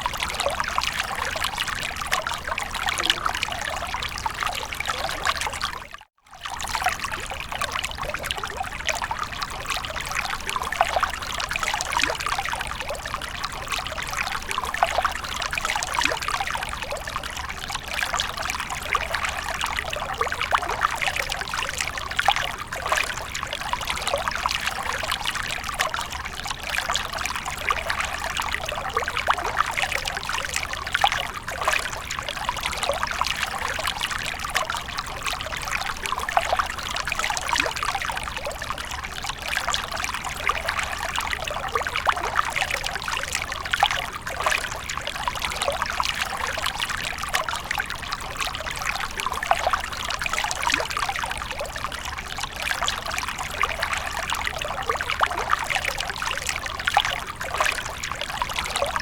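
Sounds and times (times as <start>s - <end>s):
water fountain splashing: 0.0s - 5.7s.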